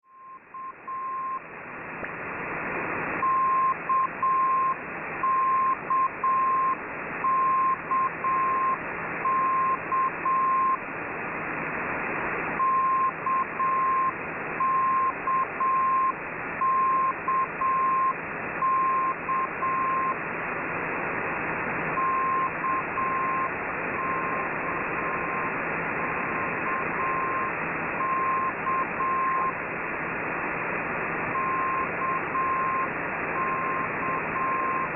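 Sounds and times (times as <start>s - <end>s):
morse code beep tone: 0.0s - 1.4s, 3.2s - 10.8s, 12.6s - 20.2s, 22.0s - 25.5s, 26.4s - 29.6s, 31.4s - 34.9s
radio band noise hiss: 0.1s - 34.9s.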